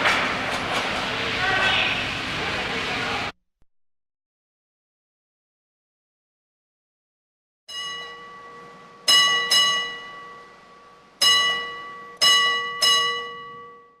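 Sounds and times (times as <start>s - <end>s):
metal object ringing when struck: 7.7s - 14.0s.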